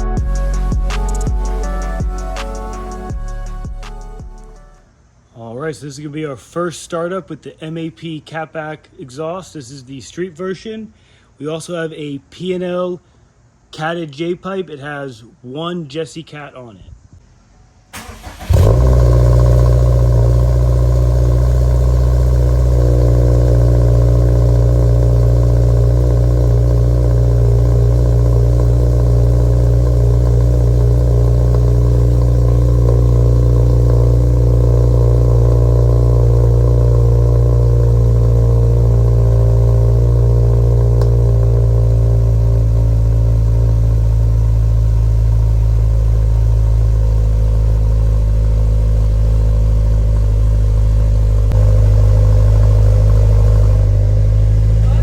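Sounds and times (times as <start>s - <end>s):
car engine starting and idling: 0.0s - 4.9s, 17.9s - 55.0s
engine cranking: 18.0s - 22.5s, 50.0s - 55.0s.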